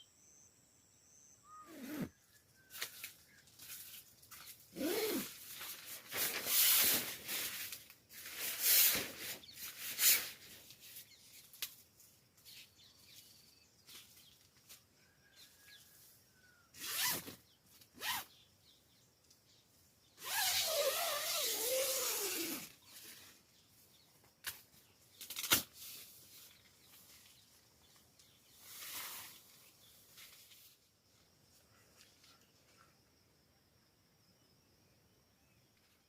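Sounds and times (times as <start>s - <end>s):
zipper being pulled: 1.7s - 2.1s, 4.7s - 5.5s, 16.8s - 17.4s, 18.0s - 18.3s, 20.2s - 22.8s.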